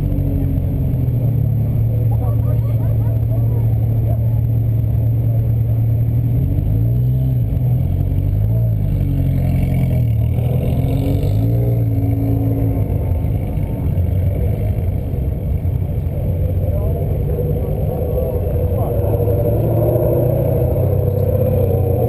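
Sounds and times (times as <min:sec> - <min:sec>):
car engine under load: 0:00.0 - 0:22.0.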